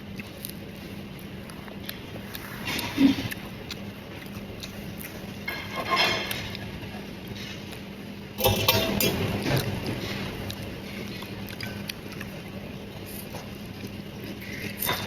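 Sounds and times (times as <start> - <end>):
utensils clicking against dishes: 8.4 - 11.8.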